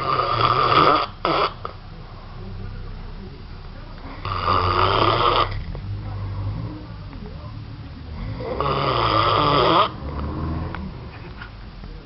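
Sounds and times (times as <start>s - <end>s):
loud snoring: 0.0s - 1.7s, 4.2s - 6.7s, 8.1s - 10.9s
quiet breathing: 5.5s - 7.0s, 7.9s - 8.6s.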